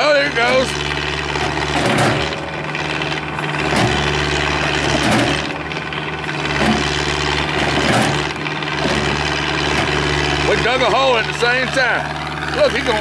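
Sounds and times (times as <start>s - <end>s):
excavator diesel engine under load: 0.0s - 13.0s.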